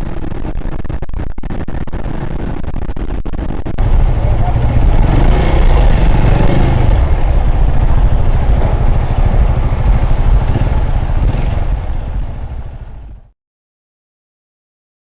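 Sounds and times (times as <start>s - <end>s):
motorcycle engine rumble: 3.3s - 13.3s.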